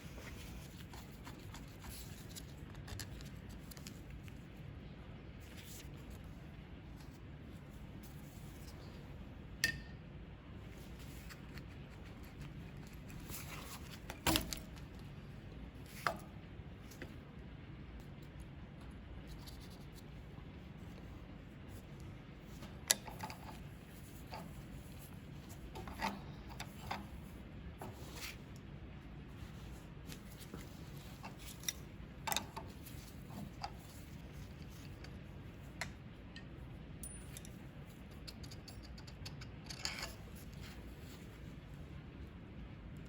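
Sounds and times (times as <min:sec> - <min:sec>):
clicks of small parts and tools: 0:35.8 - 0:40.2.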